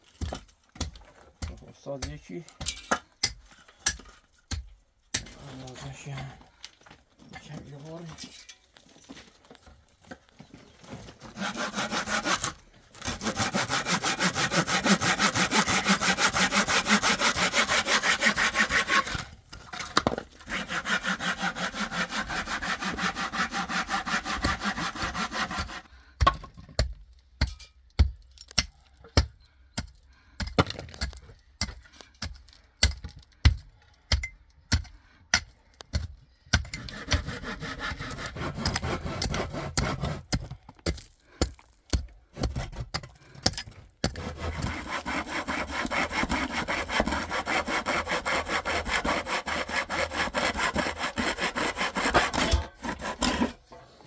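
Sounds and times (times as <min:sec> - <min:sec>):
sawing strokes: 0:11.2 - 0:19.2, 0:20.4 - 0:25.9, 0:36.7 - 0:40.4, 0:44.0 - 0:54.0.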